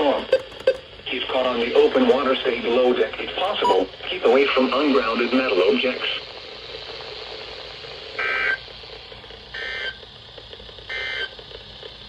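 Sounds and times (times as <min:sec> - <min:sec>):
two-tone data bursts from radio: 0:03.5 - 0:03.9.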